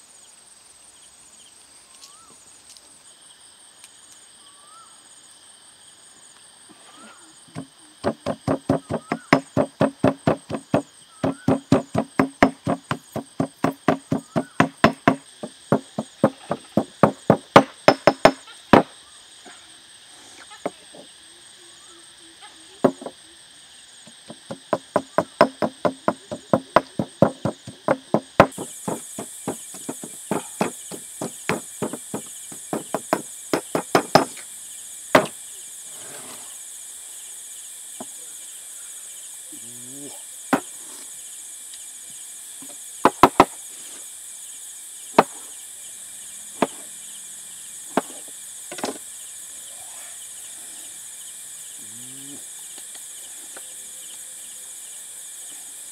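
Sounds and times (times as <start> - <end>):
high buzz of insects: 0.0 - 55.9
hand tool chopping strikes: 7.6 - 18.9, 24.3 - 34.4, 35.2 - 35.4.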